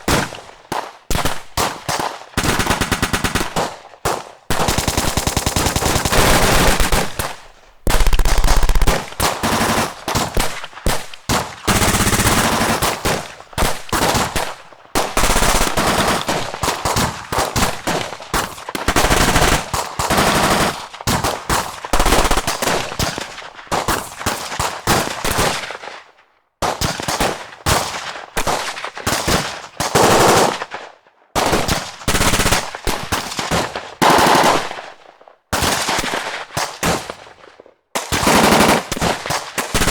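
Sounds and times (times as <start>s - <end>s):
automatic gunfire bursts: 1.1s - 22.8s, 29.9s - 30.7s, 38.1s - 39.9s
single gunshots: 6.0s - 14.6s.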